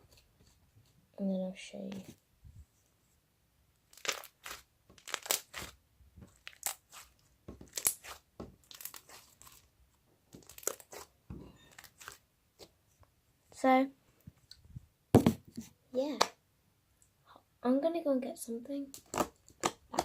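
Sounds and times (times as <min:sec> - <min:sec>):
slime crackling and popping: 0:03.9 - 0:09.7, 0:10.4 - 0:11.1.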